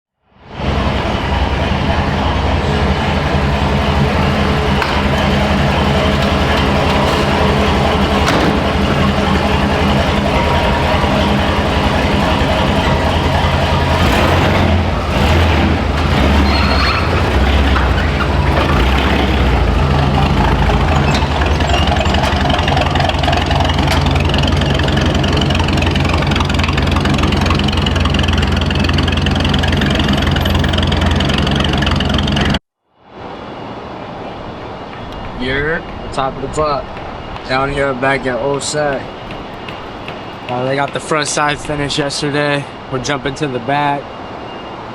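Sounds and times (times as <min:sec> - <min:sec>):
engine running with low hum: 0:00.5 - 0:32.6.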